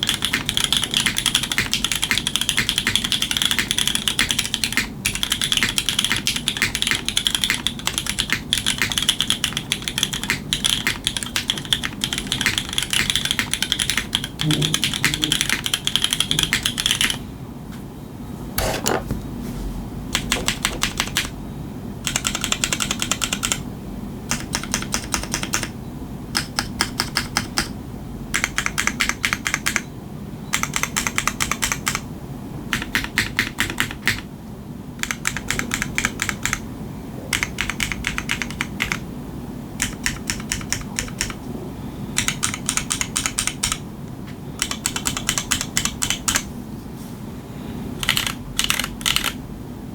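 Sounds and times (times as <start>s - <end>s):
clacky mechanical keyboard typing: 0.0s - 17.2s, 20.1s - 21.4s, 22.0s - 23.7s, 24.3s - 29.9s, 30.5s - 32.1s, 32.7s - 34.3s, 35.0s - 36.6s, 37.2s - 39.0s, 39.8s - 41.4s, 42.1s - 43.8s, 44.6s - 46.5s, 48.0s - 49.4s.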